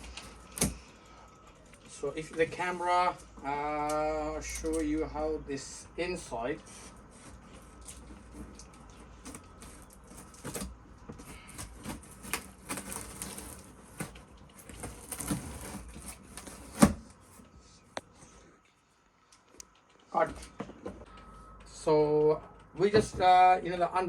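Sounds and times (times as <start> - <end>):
cardboard packaging rustling: 6.2 - 17.9.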